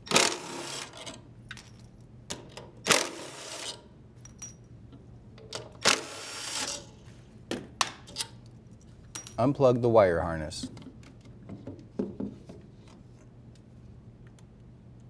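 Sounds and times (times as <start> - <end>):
impact driver loosening bolts: 0.1 - 1.1.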